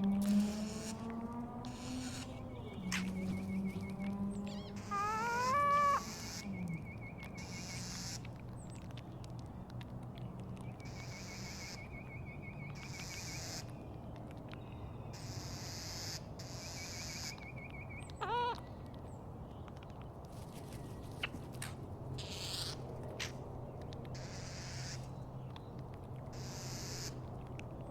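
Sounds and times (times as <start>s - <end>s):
seagull calling: 1.6s - 6.6s, 18.2s - 18.6s.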